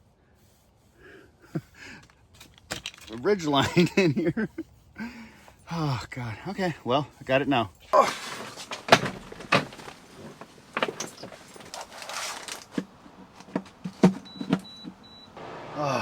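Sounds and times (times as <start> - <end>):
gear being handled: 7.9 - 15.0.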